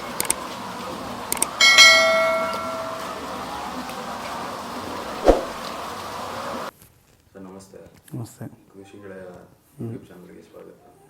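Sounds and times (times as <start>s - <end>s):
bell ringing: 1.6s - 3.5s
short thump: 5.2s - 5.6s.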